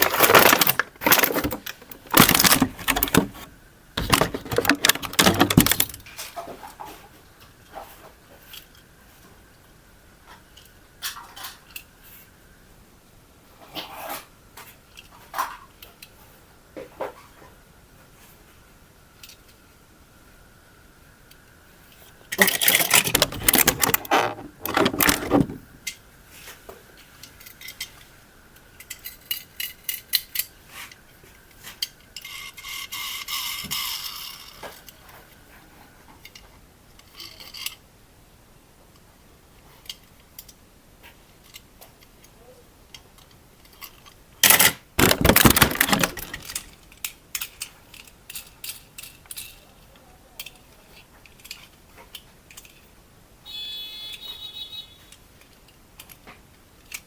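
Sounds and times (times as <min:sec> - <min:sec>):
rustling or scraping: 0:00.0 - 0:09.4, 0:21.8 - 0:28.1, 0:43.6 - 0:47.0
faint steady whine: 0:00.0 - 0:57.0
small hard objects clicking: 0:22.3 - 0:26.0.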